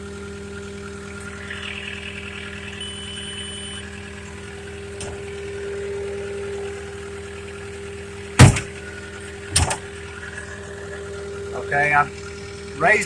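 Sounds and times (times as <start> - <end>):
diesel engine idling: 0.0 - 13.0
high electronic beep: 1.2 - 4.2.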